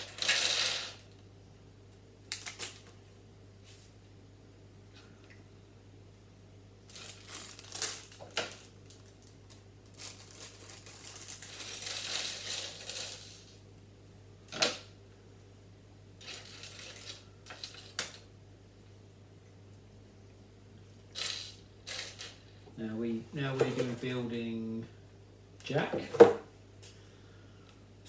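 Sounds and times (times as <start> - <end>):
plastic pieces clicking and clattering: 2.3 - 2.9.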